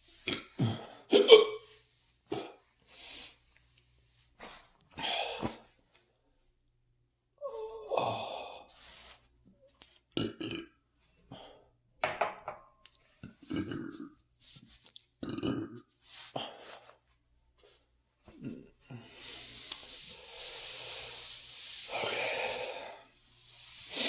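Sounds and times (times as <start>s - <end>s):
man burping: 10.2s - 10.8s, 15.2s - 15.8s.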